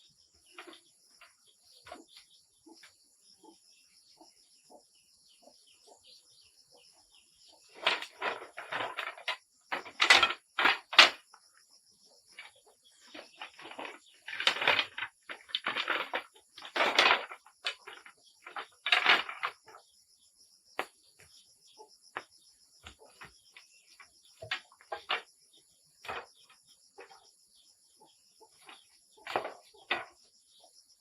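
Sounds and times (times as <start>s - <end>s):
scraping or rustling: 7.6s - 11.3s, 12.4s - 19.8s, 22.8s - 25.4s, 26.0s - 27.2s, 28.4s - 30.3s.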